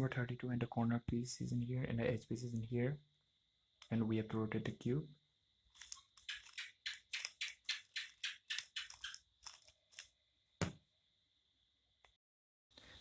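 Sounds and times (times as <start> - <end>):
puzzle cube turning clicks: 5.8 - 10.1.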